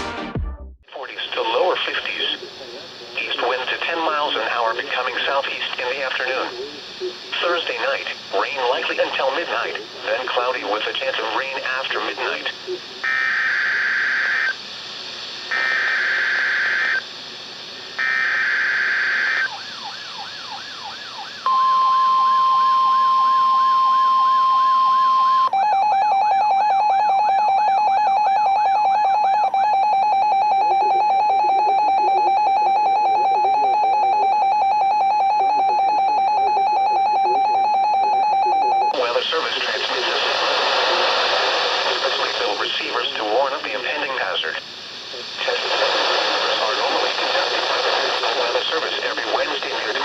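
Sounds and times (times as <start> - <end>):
steady loud tone: 1.0 - 50.0
screechy digital data bursts: 13.0 - 14.6, 15.5 - 17.0, 18.0 - 19.6.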